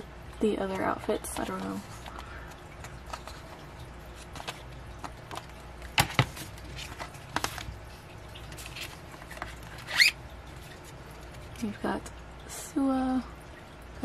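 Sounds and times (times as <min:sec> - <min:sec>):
paper rustling: 0:01.4 - 0:11.6.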